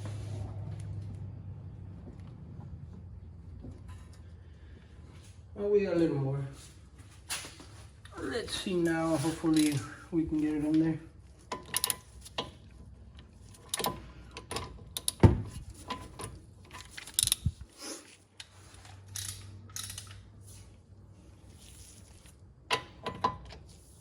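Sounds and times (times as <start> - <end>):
ratchet wrench clicking: 11.6 - 12.1, 17.0 - 17.5, 19.1 - 20.2.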